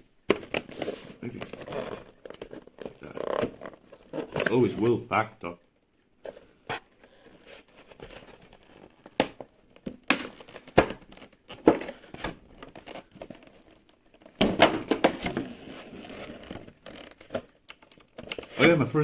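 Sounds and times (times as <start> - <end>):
packaging crinkling and rustling: 7.2 - 18.6.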